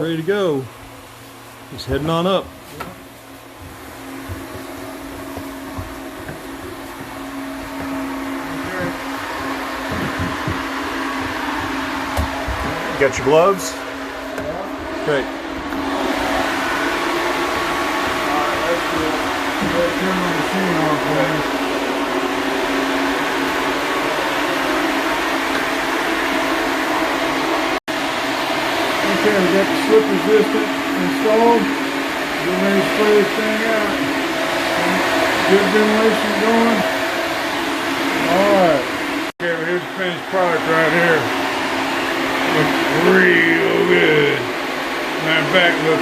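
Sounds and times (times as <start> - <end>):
electric blower humming: 0.0 - 46.0.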